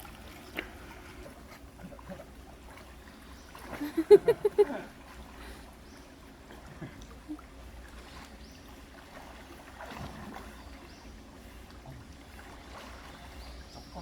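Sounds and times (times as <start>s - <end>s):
mountain stream water running: 0.0s - 14.0s.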